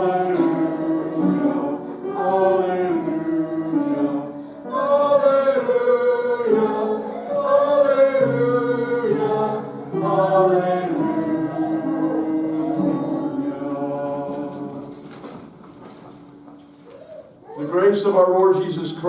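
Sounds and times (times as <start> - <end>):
congregation singing a hymn: 0.0 - 16.6
singers breathing: 4.3 - 4.7.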